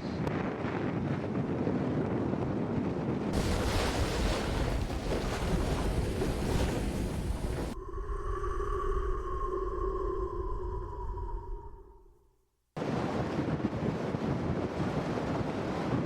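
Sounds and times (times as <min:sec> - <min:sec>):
wind buffeting microphone: 0:00.0 - 0:12.1.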